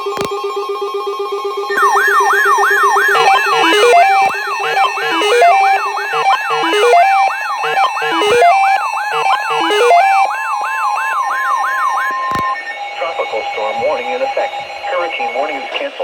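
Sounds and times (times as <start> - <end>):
sweeping siren-like alarm tone: 1.0 - 15.0
steady electronic tone: 1.7 - 12.6
stepping electronic tune: 1.7 - 12.6.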